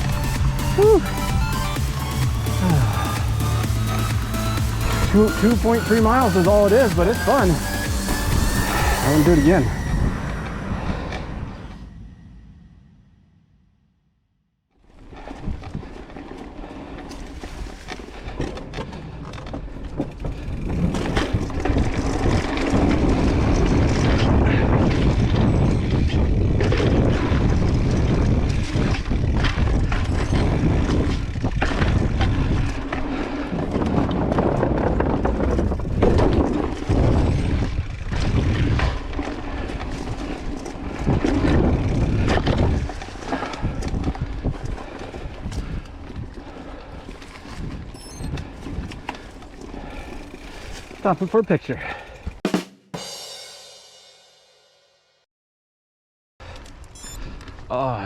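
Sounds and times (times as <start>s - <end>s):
bike tyre rumble: 0.0s - 13.0s, 14.8s - 52.4s
bike knocks and rattles: 15.2s - 51.0s
wind buffeting microphone: 17.4s - 51.0s.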